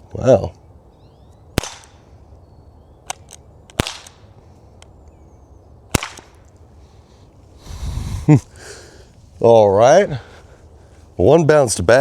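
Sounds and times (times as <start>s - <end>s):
air gun firing cracks: 1.6s - 2.0s, 3.1s - 4.3s, 5.9s - 6.6s.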